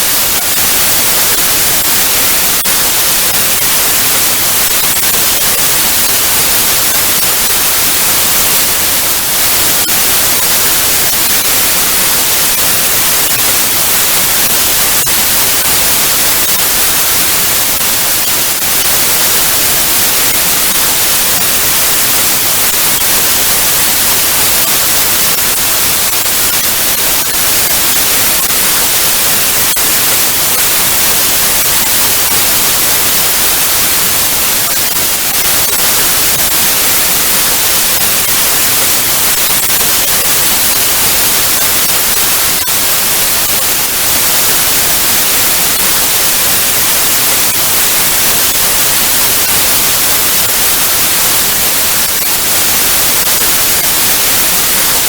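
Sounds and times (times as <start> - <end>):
tv static hiss: 0.0 - 55.0.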